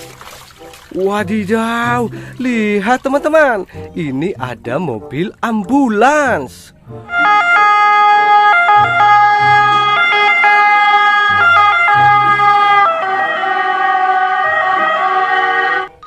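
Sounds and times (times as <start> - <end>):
toy electronic siren: 7.1 - 16.0.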